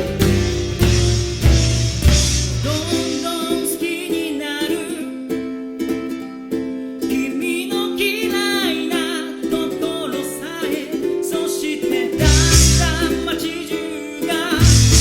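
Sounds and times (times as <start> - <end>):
heavy low drum hit: 0.0 - 3.4, 14.6 - 15.0
acoustic guitar: 0.0 - 15.0
ukulele strumming chords: 0.0 - 15.0
person singing lead vocal: 2.6 - 5.4, 7.0 - 15.0.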